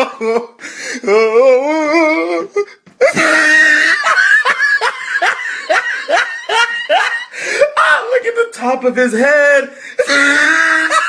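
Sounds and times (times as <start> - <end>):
high-pitched wheezy laughter: 3.0 - 7.7.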